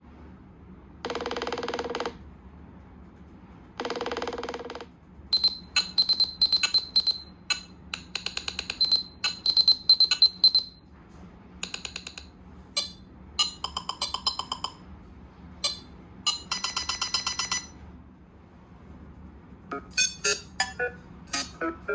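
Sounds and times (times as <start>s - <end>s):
glitchy clicks and high beeps: 19.7s - 21.9s.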